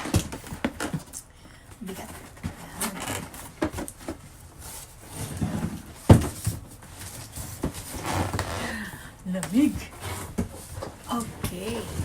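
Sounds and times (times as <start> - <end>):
cardboard box rustling and knocks: 4.9 - 8.4.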